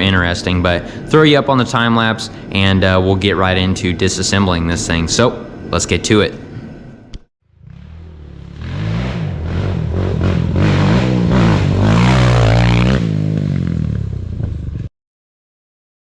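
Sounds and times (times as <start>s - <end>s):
quad engine revving: 7.5s - 14.9s.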